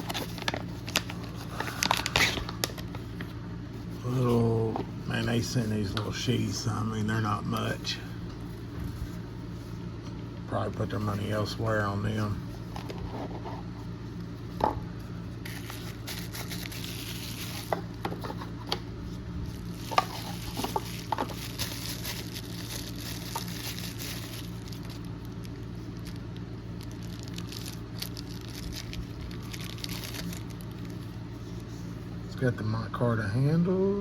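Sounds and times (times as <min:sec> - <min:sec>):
packaging crinkling and rustling: 0:00.0 - 0:04.4, 0:15.4 - 0:31.6
steady low hum: 0:00.0 - 0:34.0.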